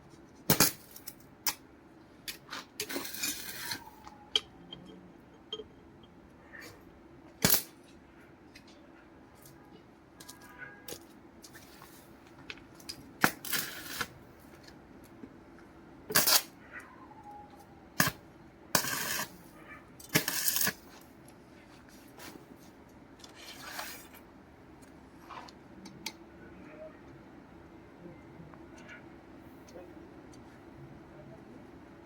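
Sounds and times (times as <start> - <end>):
steel pieces clanking on metal: 2.8 - 6.0.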